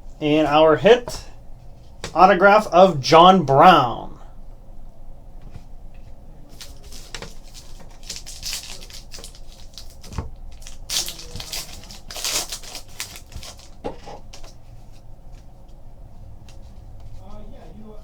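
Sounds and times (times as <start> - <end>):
wrapper crinkling and tearing: 6.6 - 13.8.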